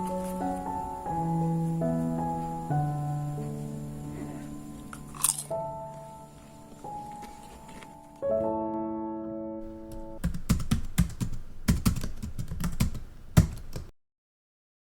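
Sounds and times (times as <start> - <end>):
held musical chord: 0.0 - 10.2.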